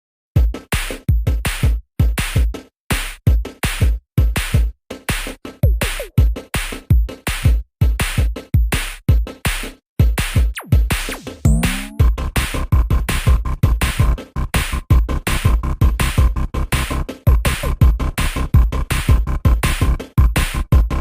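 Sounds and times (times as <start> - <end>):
phone alarm drum-machine beat: 11.5 - 12.1
short falling tone: 11.5 - 12.1.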